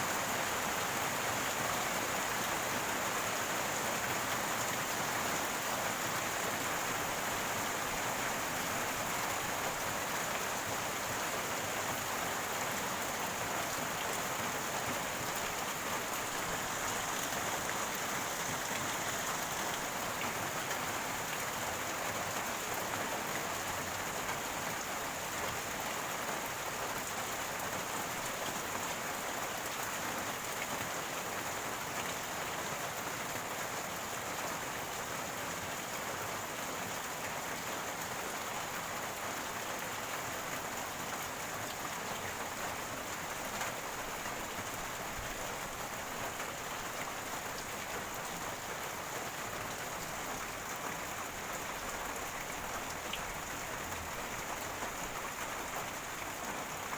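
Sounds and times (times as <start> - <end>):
rain falling: 0.0 - 56.9.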